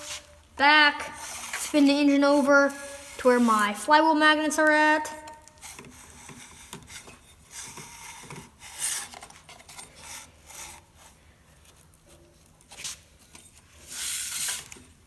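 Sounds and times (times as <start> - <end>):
metal scrape: 0.0 - 4.1, 5.2 - 11.2.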